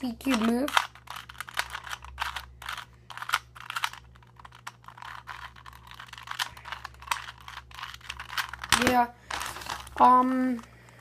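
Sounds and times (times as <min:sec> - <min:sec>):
puzzle cube clicking: 0:00.2 - 0:09.0.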